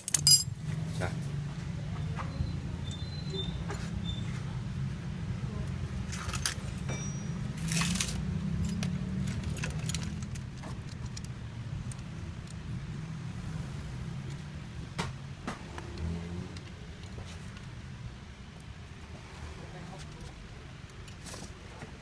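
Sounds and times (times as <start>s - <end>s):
sharp metallic clinks: 0.0s - 0.6s, 6.2s - 10.0s.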